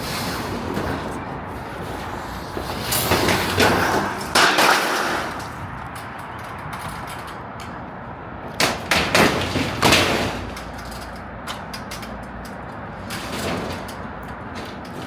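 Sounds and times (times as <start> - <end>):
panels banging: 0.0 - 5.7, 8.5 - 15.0
clatter of panels: 0.0 - 7.8, 8.5 - 15.0
rattling scrapes: 8.7 - 15.0.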